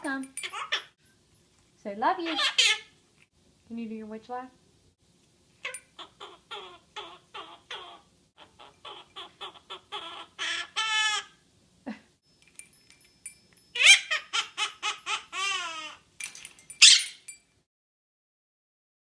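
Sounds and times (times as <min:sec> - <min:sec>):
parrot cackling laugh: 0:05.7 - 0:11.4, 0:13.8 - 0:16.0.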